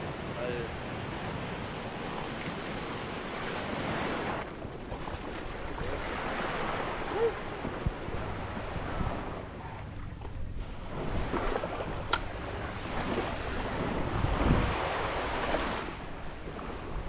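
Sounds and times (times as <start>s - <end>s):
high-pitched whine: 0.0s - 8.2s
sea water lapping and splashing: 0.0s - 17.0s
wind buffeting microphone: 0.0s - 17.0s.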